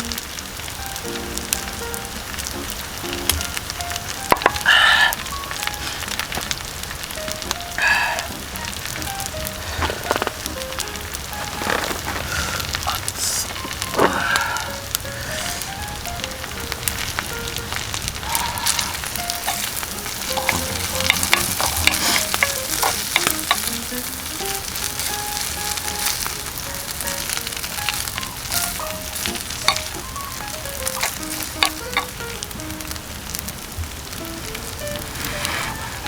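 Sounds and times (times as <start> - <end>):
food sizzling on a griddle: 0.0 - 36.0
stirring clicks and scrapes: 18.3 - 32.1.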